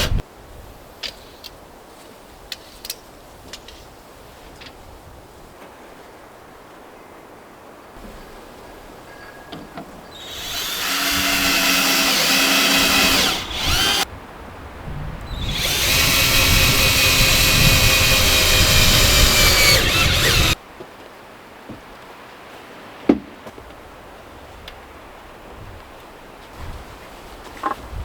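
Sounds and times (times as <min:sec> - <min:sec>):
power drill running: 0:10.1 - 0:14.0, 0:15.4 - 0:20.6.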